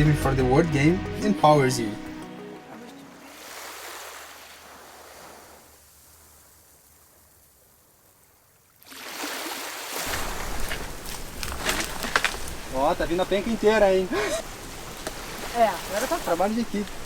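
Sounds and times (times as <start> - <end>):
ocean waves washing: 0.0 - 17.0.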